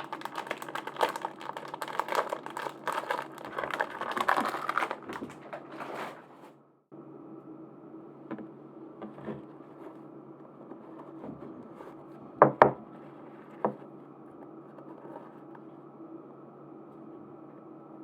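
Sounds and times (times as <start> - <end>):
hard objects clacking: 0.0 - 5.8.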